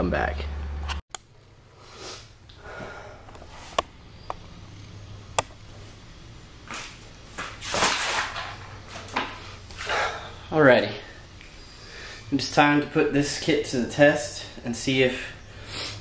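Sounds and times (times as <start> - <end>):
scraping and rustling of tools: 6.7 - 10.2.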